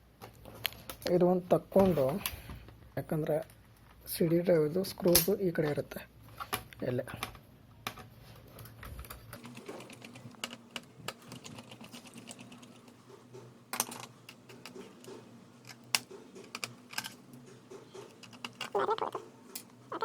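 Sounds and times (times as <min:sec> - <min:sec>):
screwdriver clicking on plastic: 0:13.8 - 0:19.8.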